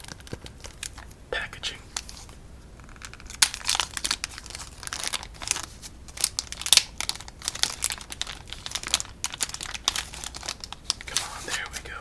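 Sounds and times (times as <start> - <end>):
packaging crinkling: 0.0 - 1.2, 1.9 - 12.0.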